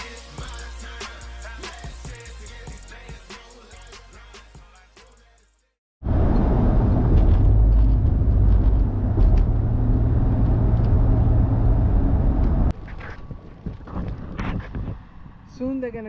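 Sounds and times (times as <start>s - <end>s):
car engine and road noise: 6.0s - 12.9s.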